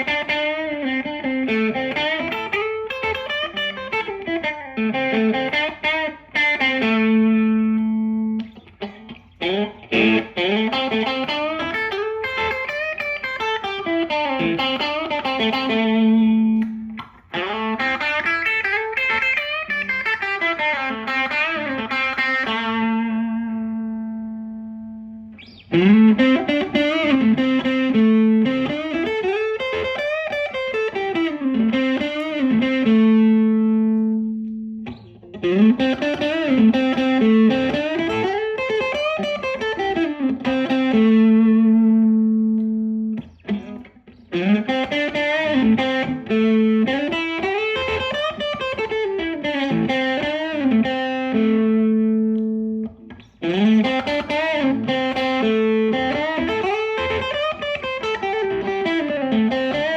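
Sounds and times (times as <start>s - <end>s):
overdriven electric guitar lead: 0.0s - 59.9s.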